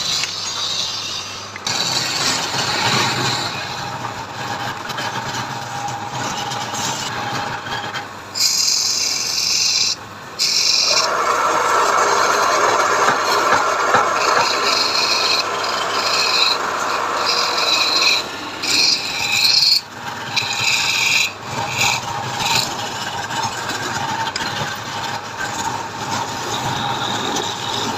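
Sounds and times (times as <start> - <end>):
wood rubbing and scraping: 10.5 - 27.9.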